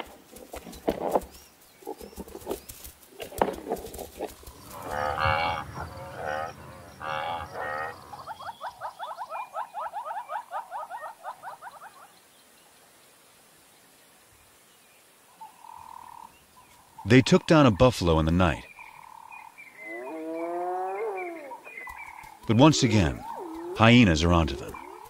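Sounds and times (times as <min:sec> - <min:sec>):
long pitched animal calls: 0:04.4 - 0:11.2, 0:19.8 - 0:21.7.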